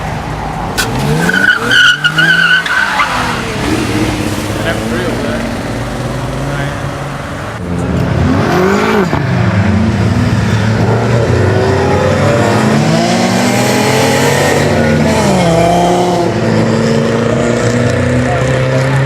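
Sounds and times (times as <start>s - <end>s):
car engine revving: 0.7s - 19.0s
tires squealing: 0.8s - 6.9s.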